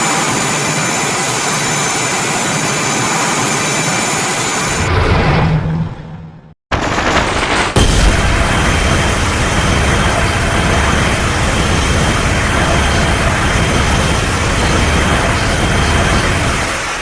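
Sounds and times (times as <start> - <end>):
deep rumble: 4.8 - 17.0.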